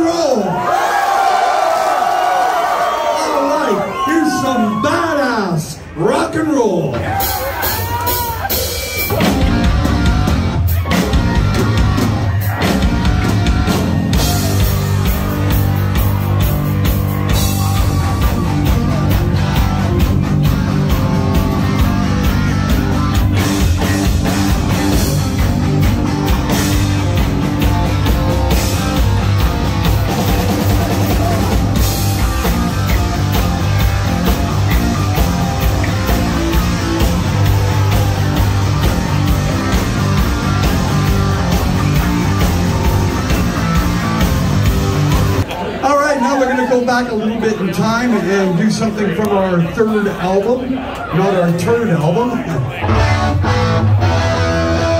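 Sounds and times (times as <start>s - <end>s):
heavy metal band playing: 3.7s - 45.5s, 51.2s - 54.9s
heavy band hits: 6.9s - 45.5s.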